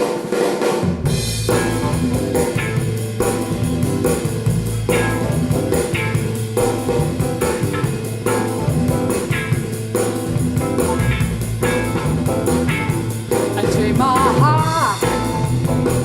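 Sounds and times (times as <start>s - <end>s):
drum kit beat: 0.0s - 16.0s
guitar: 0.0s - 16.0s
instrumental music over loudspeaker: 13.4s - 16.0s.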